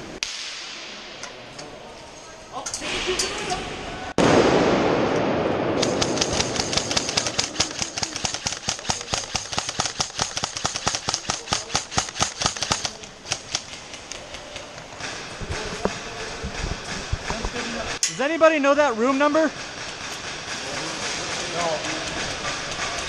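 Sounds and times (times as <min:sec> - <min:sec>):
sudden loud burst of noise: 0:02.8 - 0:08.2
airsoft guns firing rapidly: 0:05.8 - 0:15.7, 0:19.3 - 0:23.0.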